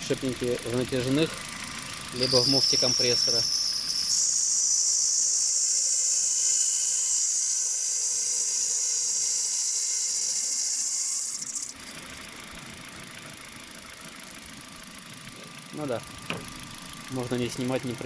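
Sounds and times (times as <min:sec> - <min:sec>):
car engine idling: 0:00.0 - 0:04.1, 0:11.7 - 0:18.0
drive belt high-pitched whistle: 0:01.0 - 0:11.8.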